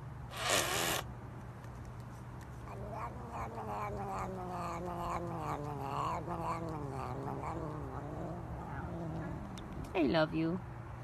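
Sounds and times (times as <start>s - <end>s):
cat yowling: 2.7s - 9.8s.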